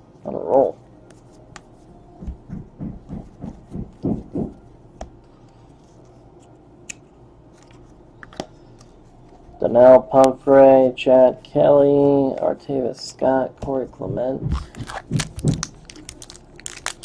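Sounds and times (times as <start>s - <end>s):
cards rustling thumps: 14.5s - 17.0s.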